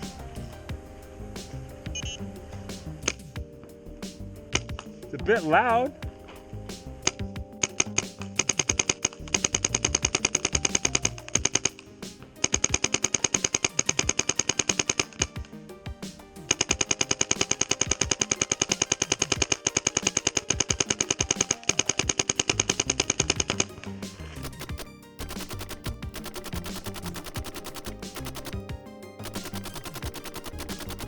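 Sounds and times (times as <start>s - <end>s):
paintball marker firing: 24.4s - 31.0s.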